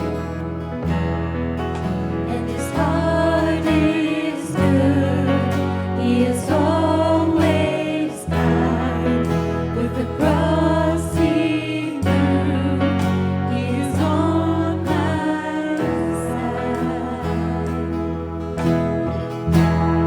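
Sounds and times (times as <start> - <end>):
sustained bass and chords: 0.0 - 20.0
person singing: 2.3 - 18.2.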